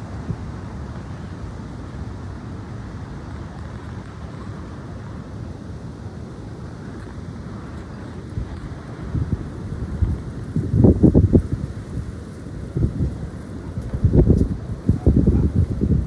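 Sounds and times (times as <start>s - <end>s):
strong wind blowing: 0.0s - 16.0s
wind rumbling on microphone: 0.0s - 16.0s.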